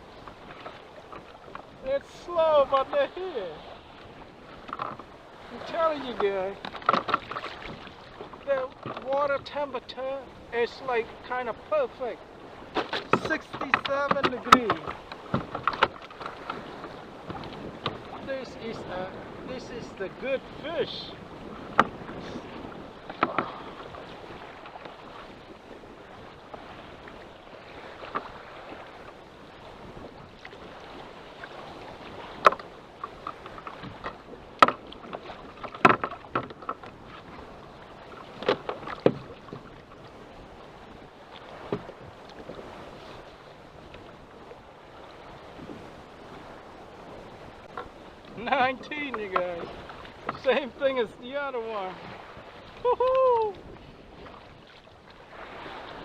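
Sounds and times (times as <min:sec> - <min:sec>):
water noise: 0:00.0 - 0:56.0
wind: 0:00.0 - 0:56.0
sharp knocks and clicks: 0:06.6 - 0:07.4, 0:12.8 - 0:16.6, 0:33.2 - 0:34.8, 0:35.6 - 0:36.9.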